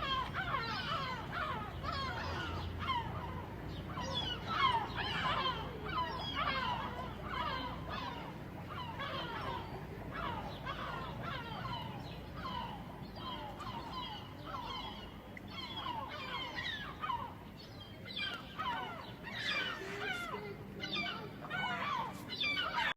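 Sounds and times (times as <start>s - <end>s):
seagulls calling: 0.0s - 22.9s.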